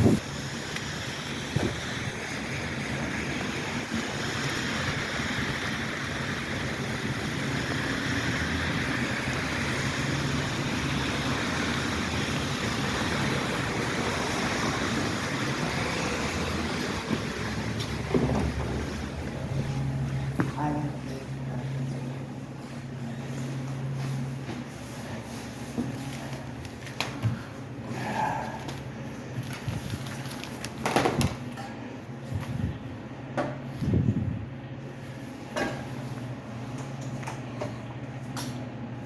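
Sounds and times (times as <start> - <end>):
rain: 0.2 - 18.1
tyres hissing on wet road: 0.2 - 19.2
car engine hum: 1.5 - 21.0.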